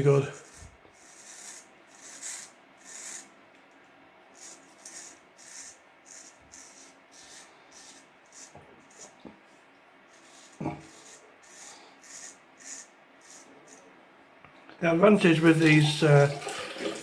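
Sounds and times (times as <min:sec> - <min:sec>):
razor scraping beard stubble: 0:00.0 - 0:03.3, 0:04.4 - 0:09.2, 0:10.1 - 0:13.9.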